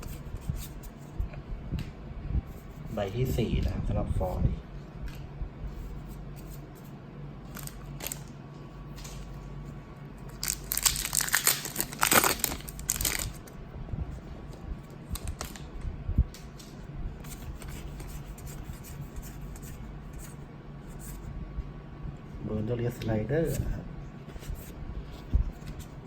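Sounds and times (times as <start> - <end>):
foil wrapper tearing and crinkling: 7.5 - 8.3, 10.4 - 13.5, 15.1 - 15.7
cards and packaging clicking: 10.4 - 13.4.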